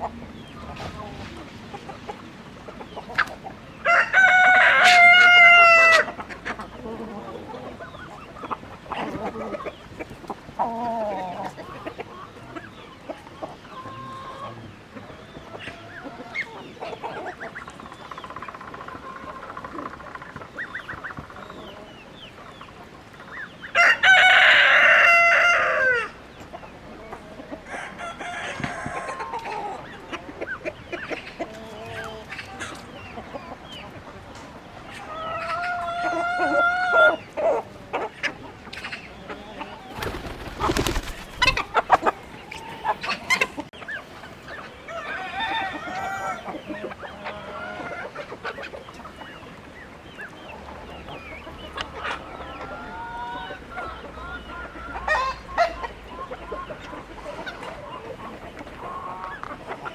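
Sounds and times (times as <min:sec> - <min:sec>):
chickens clucking: 0:00.0 - 0:59.9
rooster crowing: 0:03.8 - 0:06.1, 0:23.8 - 0:26.2, 0:44.9 - 0:46.5.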